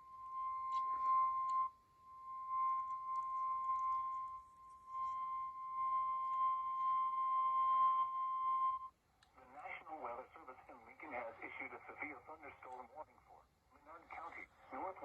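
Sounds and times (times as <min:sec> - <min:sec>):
steady alarm tone: 0:00.0 - 0:08.9
radio hiss: 0:09.4 - 0:15.0.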